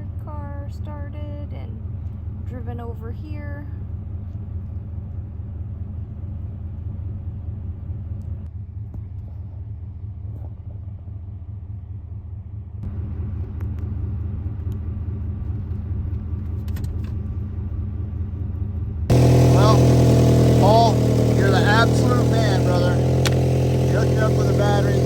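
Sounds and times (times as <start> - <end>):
car engine rumbling: 10.1 - 25.0.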